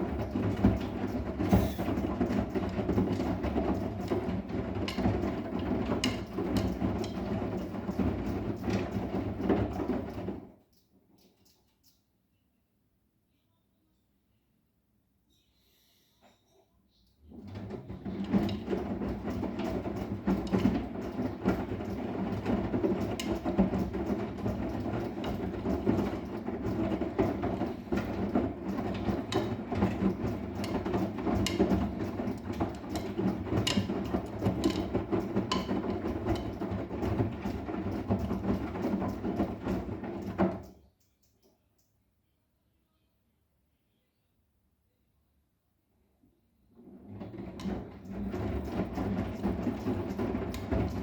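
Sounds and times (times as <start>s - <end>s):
washing machine drum rumbling: 0.0s - 10.5s, 17.3s - 40.7s, 46.8s - 51.0s
small clicks and knocks: 23.0s - 42.0s.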